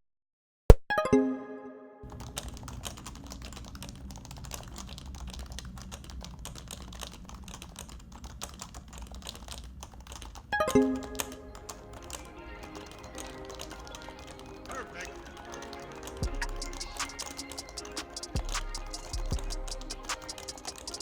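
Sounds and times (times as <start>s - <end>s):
keyboard keys clicking: 2.0s - 21.0s
quiet background music: 10.5s - 21.0s.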